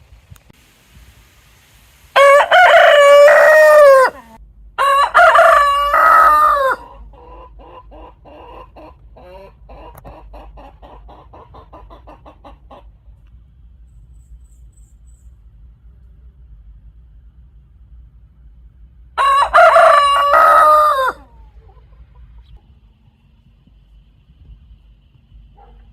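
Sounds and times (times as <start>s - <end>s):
rooster crowing: 2.2s - 7.5s, 19.2s - 21.7s
faint rapid clucking: 6.8s - 13.2s.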